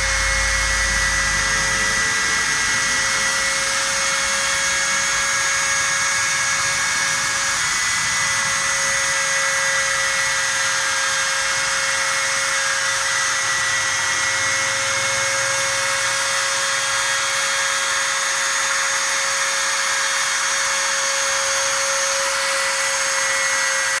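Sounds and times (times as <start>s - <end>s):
machine spindle motor whining: 0.0s - 24.0s.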